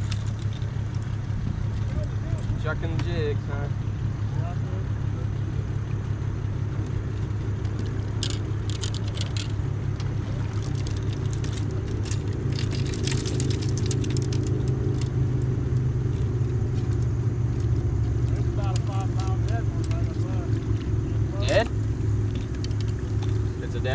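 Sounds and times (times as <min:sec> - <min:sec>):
boat motor humming: 0:00.0 - 0:23.9
light clicking and rattling: 0:00.0 - 0:23.9.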